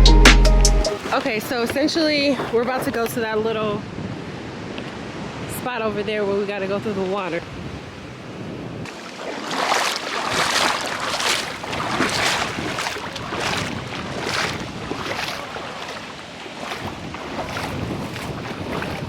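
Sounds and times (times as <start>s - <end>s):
feet splashing through water: 0.9s - 3.3s, 8.8s - 19.0s.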